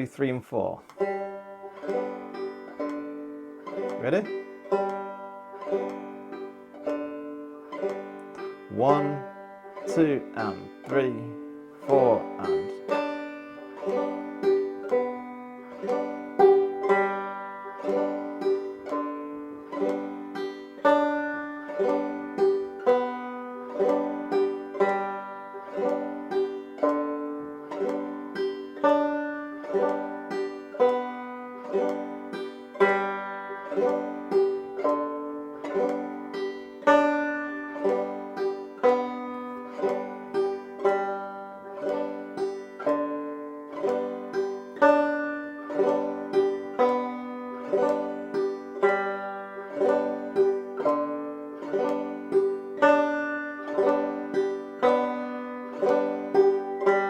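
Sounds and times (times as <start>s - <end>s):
banjo strumming: 0.0s - 57.0s.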